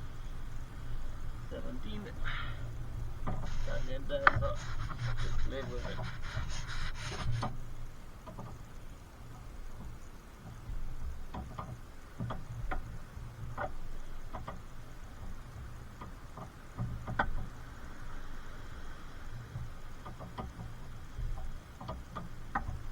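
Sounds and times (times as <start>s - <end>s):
hand tool rubbing scrape: 3.3s - 7.5s.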